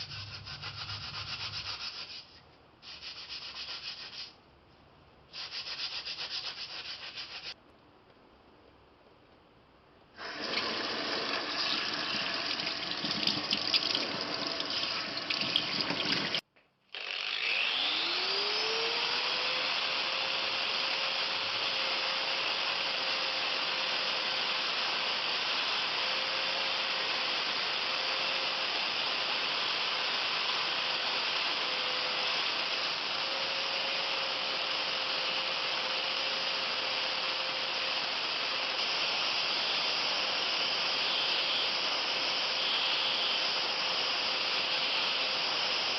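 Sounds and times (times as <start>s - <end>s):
rubbing and scraping: 0.0s - 4.4s, 5.3s - 7.6s
power tool motor with hiss: 5.3s - 7.6s, 10.2s - 13.6s, 17.0s - 45.9s.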